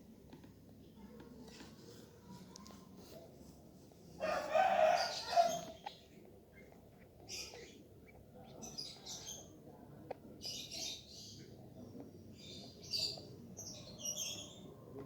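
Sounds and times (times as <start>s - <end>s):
small birds chirping: 4.3s - 15.0s.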